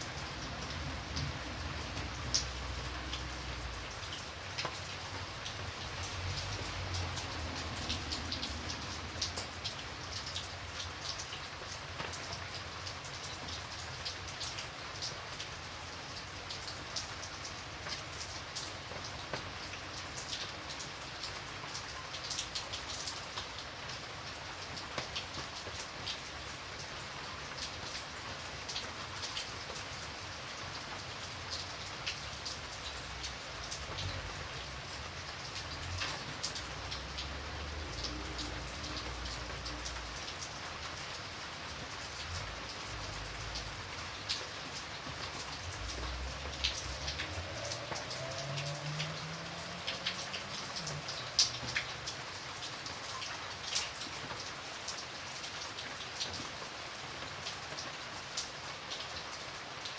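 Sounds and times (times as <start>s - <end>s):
rain hissing: 0.0s - 12.4s, 28.0s - 53.7s
raindrops ticking sharply: 0.0s - 15.4s, 24.7s - 55.4s.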